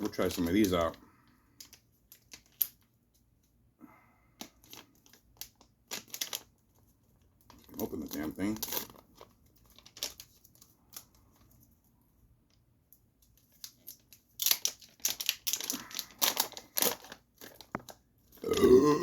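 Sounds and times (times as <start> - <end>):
package crinkling and tearing: 1.6 - 2.9, 4.4 - 6.6, 7.4 - 11.2, 13.3 - 18.6.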